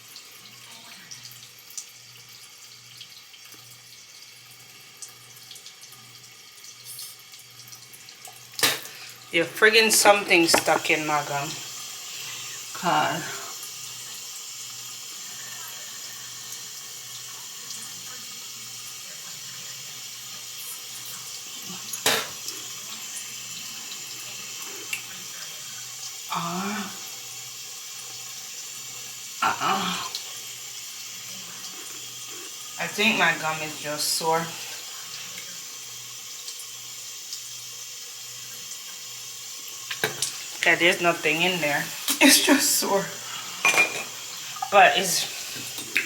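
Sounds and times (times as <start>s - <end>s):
tap water running into sink: 0.0s - 46.0s
tap running into sink: 8.6s - 9.0s, 9.7s - 11.3s, 22.0s - 22.5s, 39.9s - 40.6s, 43.6s - 44.7s.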